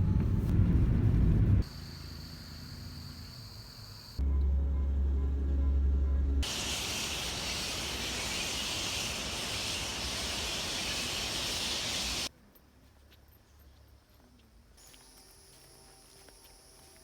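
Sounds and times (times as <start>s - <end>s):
steady outdoor hiss: 1.6s - 4.2s, 6.4s - 17.0s.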